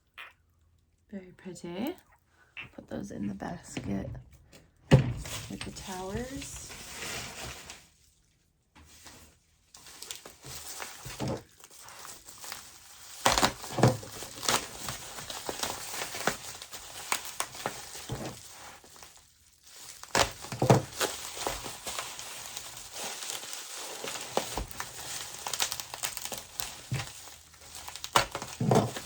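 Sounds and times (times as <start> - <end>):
packing material crinkling: 5.2 - 8.3, 8.9 - 29.0.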